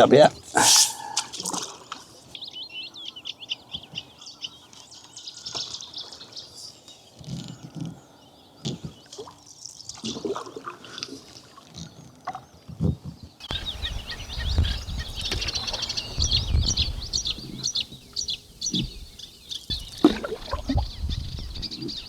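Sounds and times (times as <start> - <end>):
songbirds twittering: 0.0 - 22.0
canoe paddle in water: 13.4 - 22.0.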